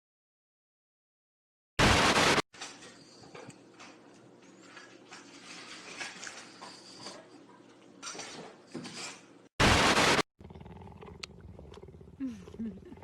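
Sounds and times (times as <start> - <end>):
static-like hiss burst: 1.8 - 2.4, 9.6 - 10.2
dishes or utensils clattering: 2.6 - 9.4.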